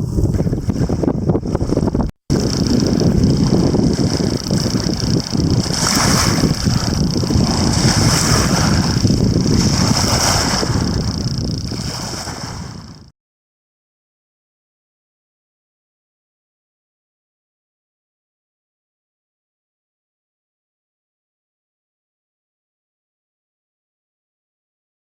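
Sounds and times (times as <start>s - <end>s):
wind buffeting microphone: 0.0s - 13.1s.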